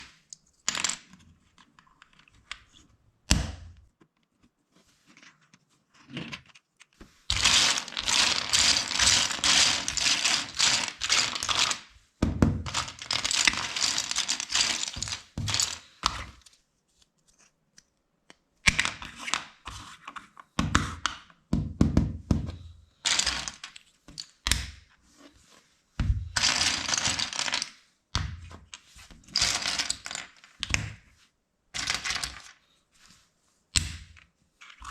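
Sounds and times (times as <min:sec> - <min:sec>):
plastic bricks clattering: 0:00.0 - 0:01.6, 0:07.3 - 0:12.0, 0:12.6 - 0:16.4, 0:23.1 - 0:24.7, 0:26.2 - 0:27.8, 0:28.7 - 0:31.0, 0:31.8 - 0:32.6.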